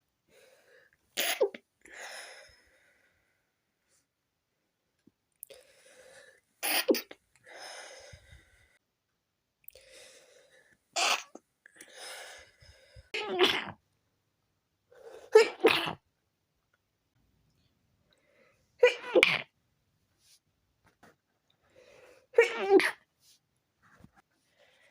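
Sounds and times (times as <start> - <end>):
person sneezing: 1.2 - 1.6, 6.6 - 7.2, 11.0 - 11.4, 15.2 - 16.0, 18.8 - 19.5, 22.4 - 23.0.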